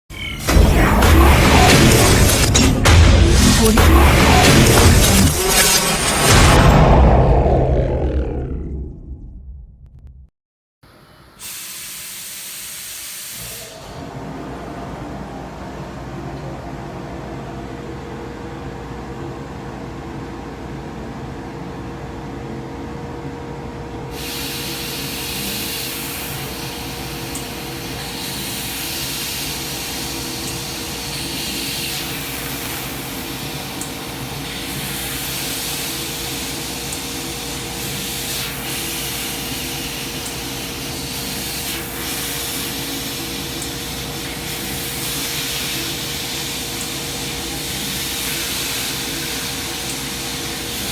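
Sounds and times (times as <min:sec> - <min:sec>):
laser cutter humming: 0:00.1 - 0:09.0
loud hiss: 0:11.0 - 0:13.6, 0:24.1 - 0:50.9.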